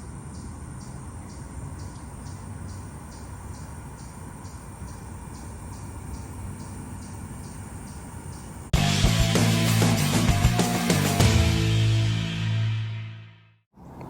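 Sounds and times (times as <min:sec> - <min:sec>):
cricket chirping: 0:00.0 - 0:08.7.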